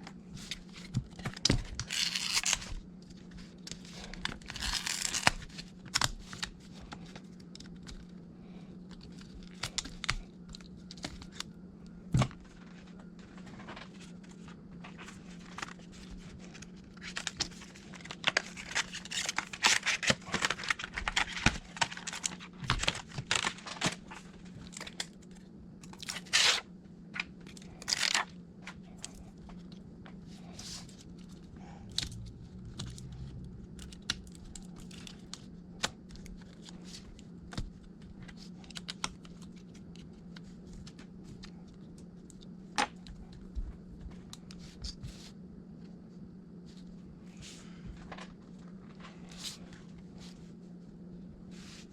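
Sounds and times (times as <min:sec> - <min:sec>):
steady low hum: 0:00.0 - 0:51.9
adhesive tape peeling and crinkling: 0:01.8 - 0:02.6, 0:04.5 - 0:06.1.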